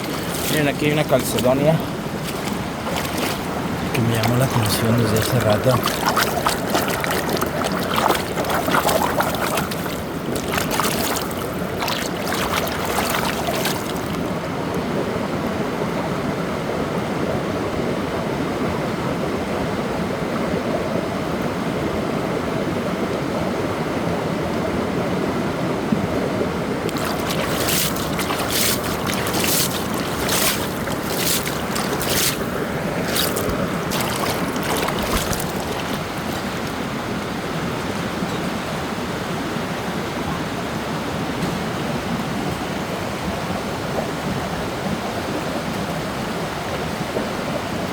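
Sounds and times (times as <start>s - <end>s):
water flowing over rocks: 0.0s - 14.5s, 26.9s - 37.3s.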